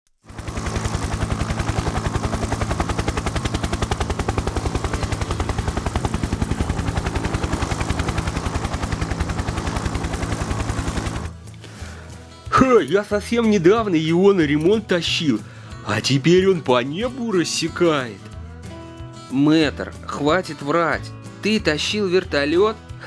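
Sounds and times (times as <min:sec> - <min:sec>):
helicopter rotor chopping: 0:00.2 - 0:15.5
low engine hum: 0:00.3 - 0:11.5.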